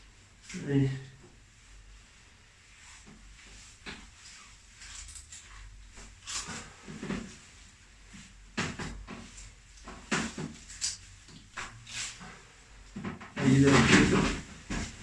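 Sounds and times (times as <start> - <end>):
knocks and rustles on table: 8.2 - 11.8.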